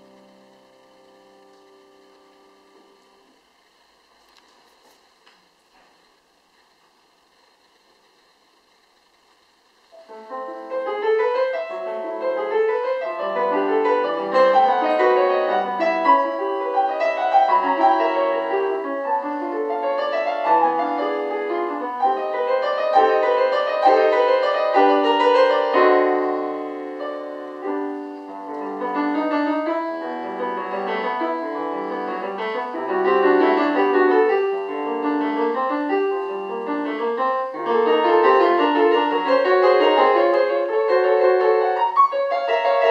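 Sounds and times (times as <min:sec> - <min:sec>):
solo piano classical piece: 0:00.0 - 0:05.0, 0:09.9 - 0:42.9.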